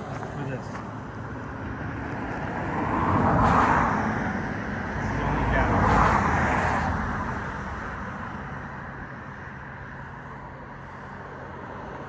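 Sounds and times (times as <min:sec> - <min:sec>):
low road rumble: 0:00.0 - 0:12.0
car passing by: 0:01.6 - 0:08.7.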